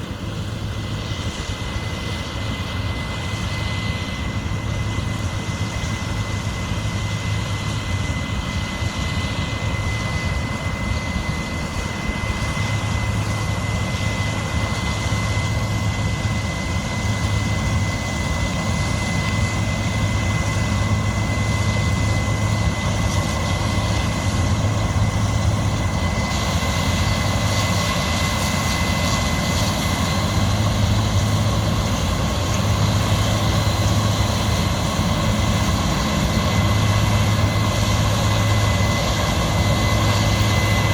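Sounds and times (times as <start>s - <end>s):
diesel machinery engine hum: 0.0s - 40.9s
thin steady whine: 0.0s - 40.9s.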